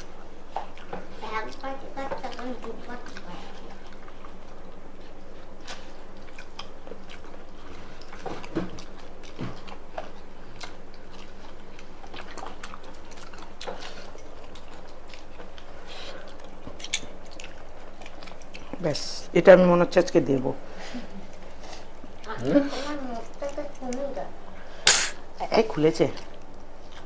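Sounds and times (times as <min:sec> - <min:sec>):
chewing and biting: 0:02.2 - 0:18.9.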